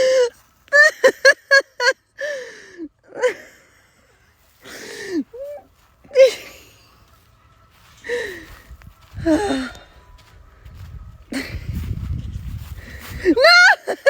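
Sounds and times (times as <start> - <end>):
person laughing hard: 0.0 - 2.4, 4.7 - 6.8, 13.2 - 14.0
breathless gasps: 2.2 - 5.4.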